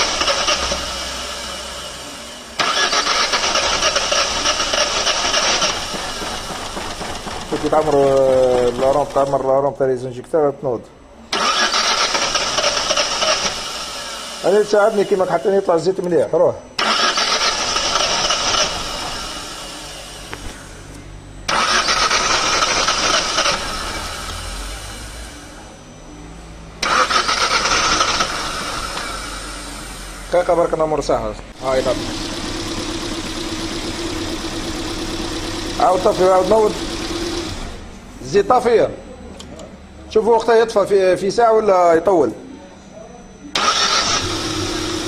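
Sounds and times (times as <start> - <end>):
starter motor cranking engine: 0.0 - 9.4, 11.3 - 15.6, 16.8 - 20.4, 21.5 - 25.4, 26.8 - 30.8, 31.6 - 37.9, 43.6 - 45.0.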